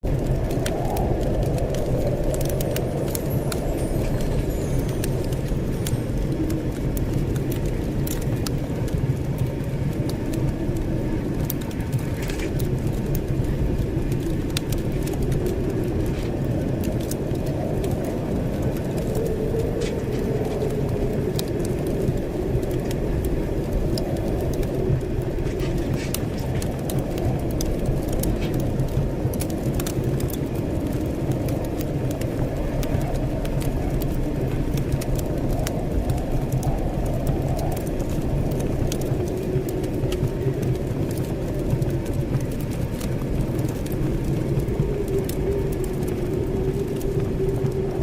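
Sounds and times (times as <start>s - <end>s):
blizzard wind rushing: 0.0s - 48.0s
small clicks and crackles: 0.0s - 48.0s.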